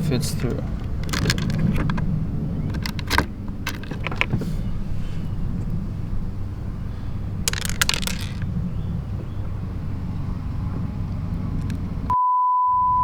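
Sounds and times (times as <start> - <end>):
metal bolt clinking and rattling: 0.2 - 4.9, 5.6 - 10.3.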